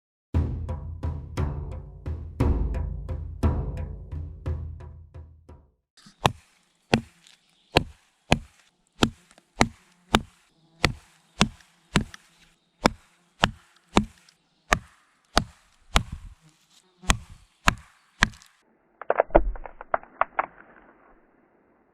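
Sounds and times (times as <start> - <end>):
knife chopping into wood: 6.0 - 16.4, 17.1 - 18.6.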